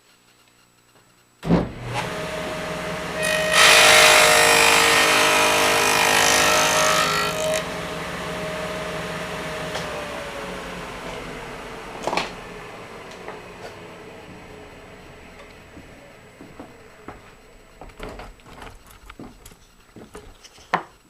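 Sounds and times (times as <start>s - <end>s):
table saw running: 1.8s - 17.9s
saw blade cutting wood: 3.2s - 7.8s.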